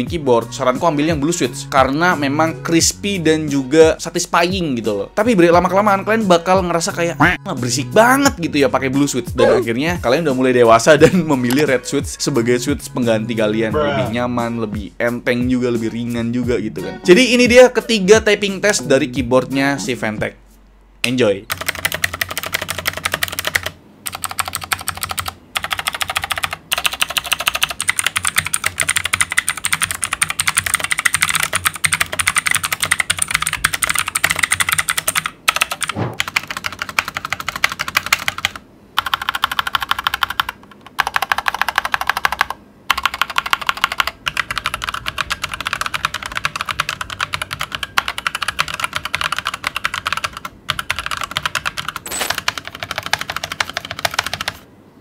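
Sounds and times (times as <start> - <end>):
mechanical keyboard clicking: 21.5 - 54.6.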